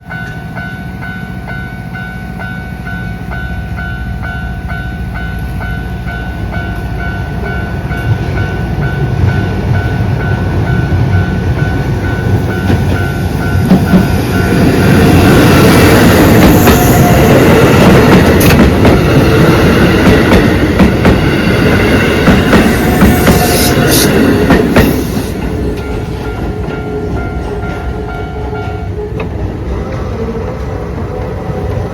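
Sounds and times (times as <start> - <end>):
level-crossing bell clanging: 0.0 - 29.2
electric train rumble: 0.0 - 31.9
train wheels clacking over rail joints: 12.3 - 27.9.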